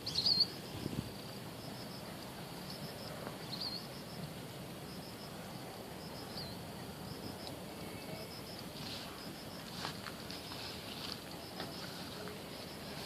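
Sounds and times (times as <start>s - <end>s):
bird chirps: 0.0s - 0.6s, 3.4s - 4.0s
insects chirping: 0.0s - 13.0s
steady background hiss: 0.0s - 13.0s.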